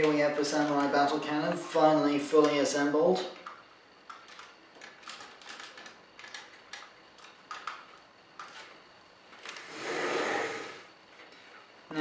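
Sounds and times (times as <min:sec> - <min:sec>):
plastic toy parts clicking: 0:03.4 - 0:08.7.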